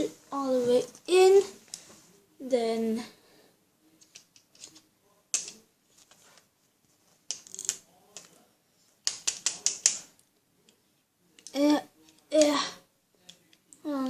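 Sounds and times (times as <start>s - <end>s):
plastic pieces clicking and knocking: 4.0s - 5.6s, 7.3s - 8.4s, 9.0s - 10.1s.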